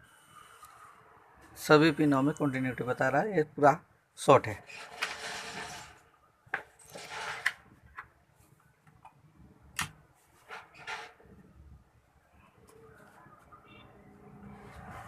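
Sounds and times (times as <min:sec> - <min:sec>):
short scrapes: 0:04.6 - 0:06.0.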